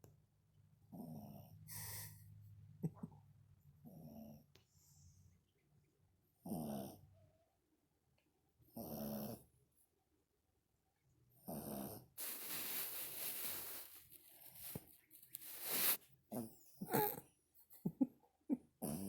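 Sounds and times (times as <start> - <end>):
dogs snoring: 0.8 - 2.1, 3.8 - 4.6, 6.4 - 7.2, 8.6 - 9.6, 11.3 - 12.2, 15.5 - 17.2, 18.8 - 19.0.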